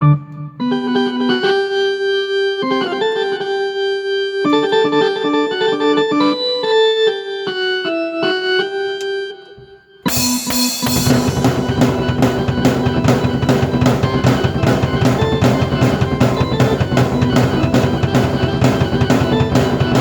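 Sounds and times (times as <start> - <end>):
keyboard melody: 0.0 - 20.0
drum kit with crash: 10.1 - 20.0.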